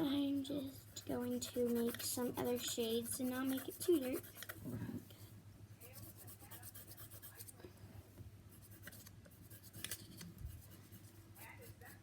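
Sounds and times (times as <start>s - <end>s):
coloring on paper: 0.0s - 4.7s, 5.8s - 7.5s
low steady hum: 0.0s - 12.0s.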